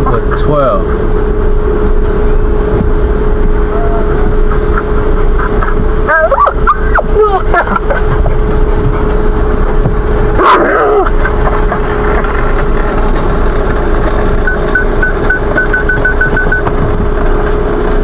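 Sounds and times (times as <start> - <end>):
car engine rumble in cabin: 0.0 - 18.0
parking sensor beeps: 2.2 - 2.6, 14.4 - 16.8.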